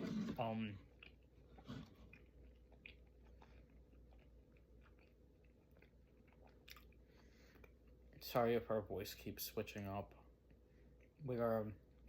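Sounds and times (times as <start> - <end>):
person chewing: 0.0 - 8.2.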